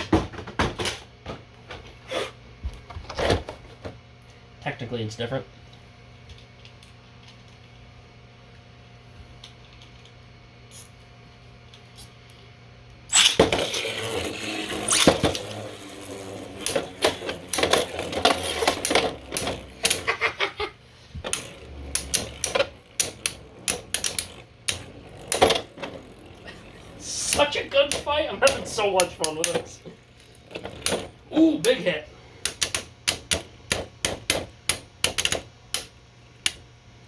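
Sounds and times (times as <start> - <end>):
spinning tops launching rush: 13.1 - 20.3, 21.2 - 35.4
spinning tops clacking: 13.1 - 20.4, 21.2 - 35.9.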